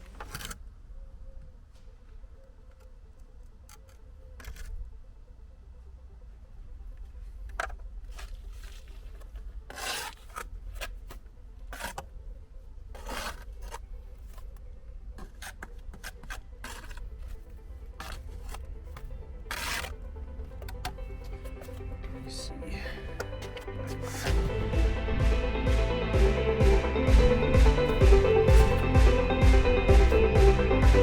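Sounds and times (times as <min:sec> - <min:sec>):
trowel scraping mortar: 0:09.7 - 0:12.1, 0:12.9 - 0:14.5, 0:15.2 - 0:20.0, 0:23.2 - 0:24.5, 0:28.0 - 0:29.3
steady low hum: 0:10.5 - 0:31.0.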